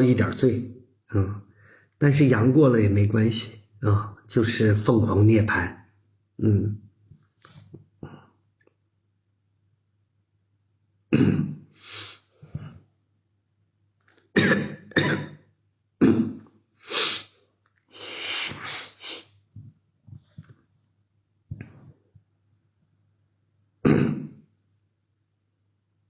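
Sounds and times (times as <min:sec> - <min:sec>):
man coughing: 0:11.1 - 0:11.6, 0:14.4 - 0:16.5, 0:23.8 - 0:24.5
rasping breath: 0:16.8 - 0:19.3.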